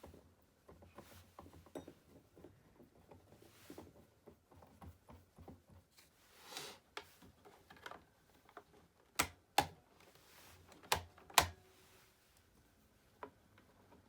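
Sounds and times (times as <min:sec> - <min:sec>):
plastic parts clicking and tapping: 0:07.0 - 0:09.9, 0:10.7 - 0:11.6
sharp plastic clicks: 0:09.1 - 0:09.8, 0:10.8 - 0:11.6.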